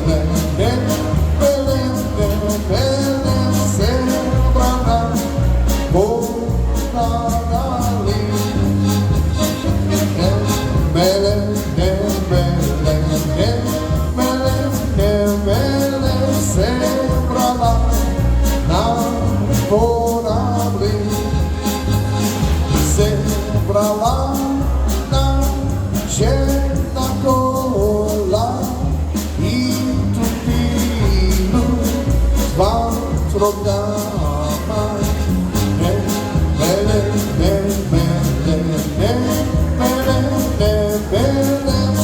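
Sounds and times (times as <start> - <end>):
polka band playing: 0.0 - 42.0
steady bass beat: 0.0 - 42.0.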